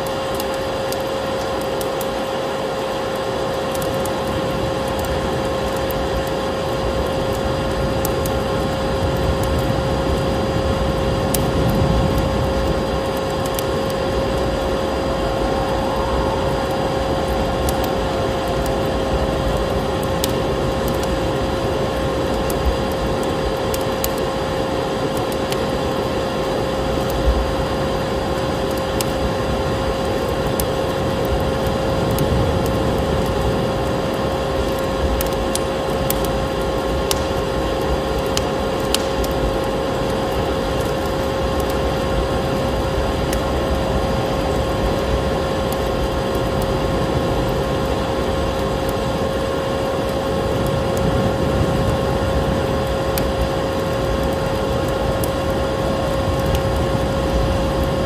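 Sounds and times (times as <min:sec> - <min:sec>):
wood fire crackling: 0:00.0 - 0:58.0
vacuum cleaner running: 0:13.5 - 0:22.3.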